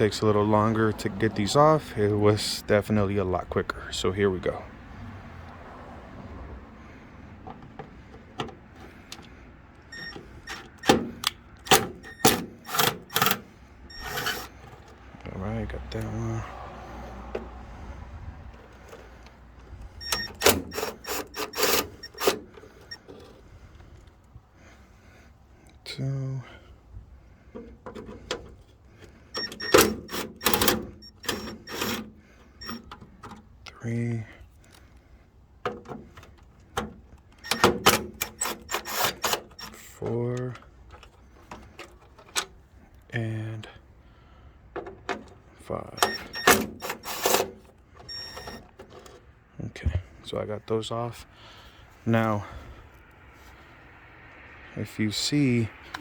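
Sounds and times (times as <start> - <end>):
hand tool fiddling with fastener: 9.9 - 15.0, 20.0 - 23.4, 29.4 - 33.5, 35.7 - 43.0, 46.0 - 49.2
metallic scraping bursts: 9.9 - 15.0, 18.7 - 23.5, 29.3 - 32.9, 37.4 - 40.0, 45.7 - 49.3.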